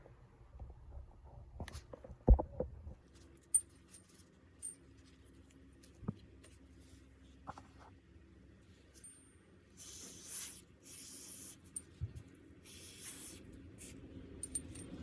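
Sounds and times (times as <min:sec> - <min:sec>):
high metallic rings: 0:12.7 - 0:15.0
metal tools clinking and knocking: 0:14.4 - 0:15.0.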